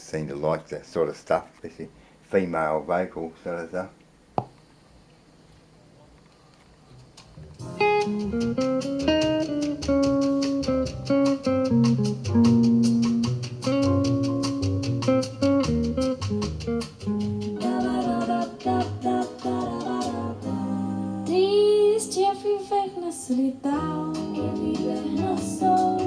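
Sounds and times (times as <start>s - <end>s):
plucked guitar over bass line: 7.6s - 18.4s.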